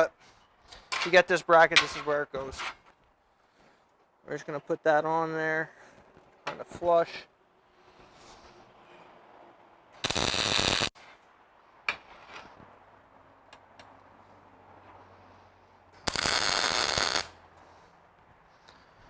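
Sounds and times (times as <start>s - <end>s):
arc welder bursts: 10.0s - 11.0s, 16.0s - 17.4s.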